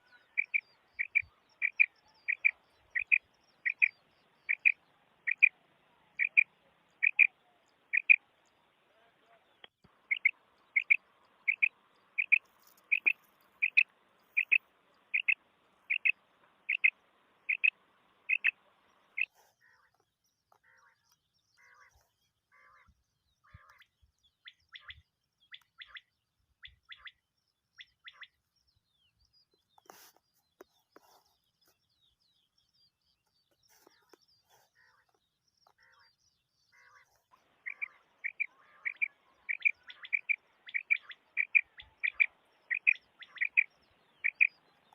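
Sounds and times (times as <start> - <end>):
quail calling: 0.0 - 3.9, 4.5 - 5.6, 6.2 - 7.3, 7.9 - 8.2, 10.1 - 18.6, 36.7 - 44.6.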